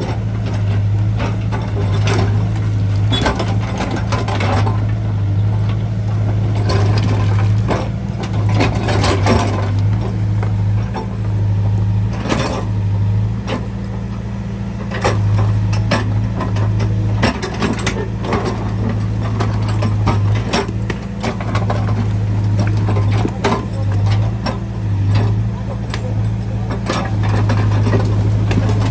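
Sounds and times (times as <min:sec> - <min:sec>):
diesel engine running: 0:00.0 - 0:28.9.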